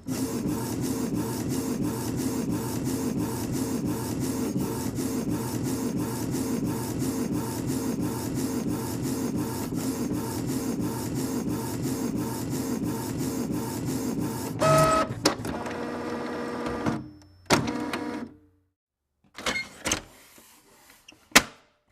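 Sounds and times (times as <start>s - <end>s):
printer motor running: 0.0s - 16.9s
printer motor whine: 8.8s - 17.0s, 17.6s - 18.3s.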